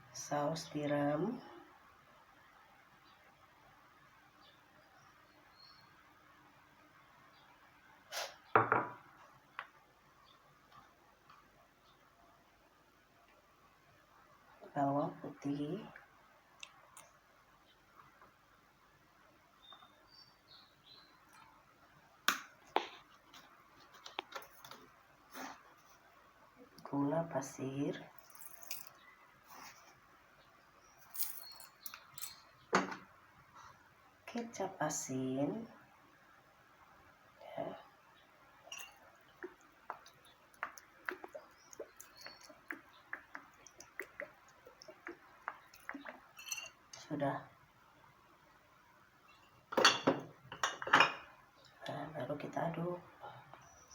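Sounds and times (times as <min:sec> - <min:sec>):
utensils and containers handled: 0:28.2 - 0:29.0, 0:31.0 - 0:33.0, 0:38.7 - 0:39.1, 0:45.8 - 0:46.8.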